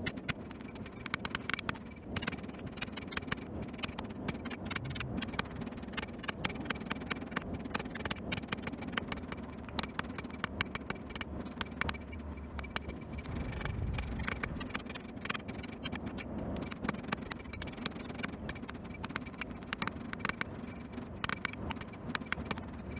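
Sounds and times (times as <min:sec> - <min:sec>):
sharp clicks and taps: 0:00.0 - 0:20.5
forge rumbling: 0:04.5 - 0:06.2, 0:13.1 - 0:15.8.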